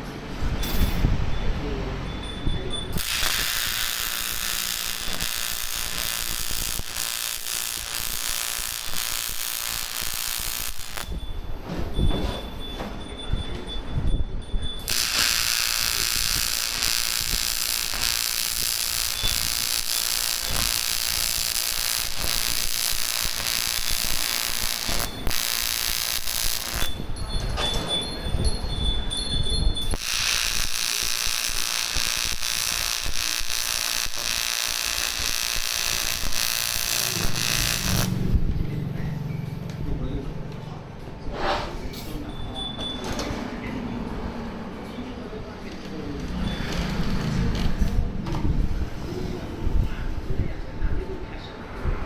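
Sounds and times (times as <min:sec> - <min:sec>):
welding arc buzzing: 0:02.9 - 0:11.6, 0:14.8 - 0:27.1, 0:29.9 - 0:38.4.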